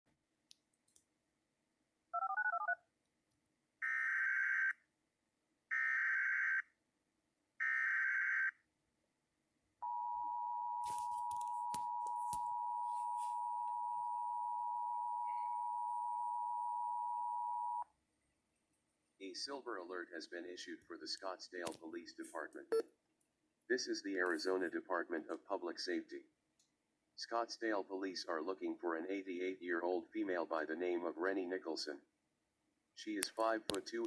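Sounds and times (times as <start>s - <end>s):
two-tone attention signal: 9.8s - 17.8s
clicks and crackles: 10.8s - 12.5s, 20.8s - 23.3s, 33.2s - 33.9s.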